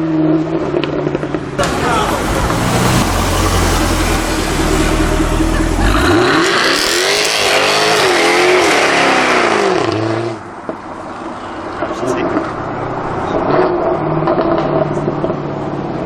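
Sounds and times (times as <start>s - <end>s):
car engine revving: 0.6s - 10.4s.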